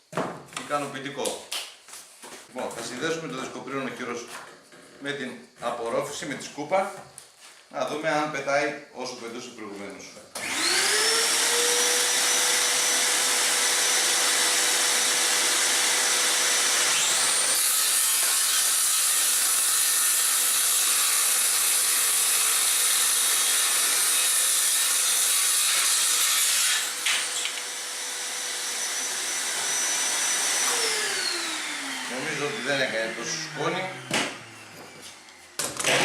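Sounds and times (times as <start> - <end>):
vacuum running: 10.4 - 17.5, 26.9 - 36.0
circular saw whining: 10.4 - 36.0
saw cutting wooden board: 10.4 - 36.0.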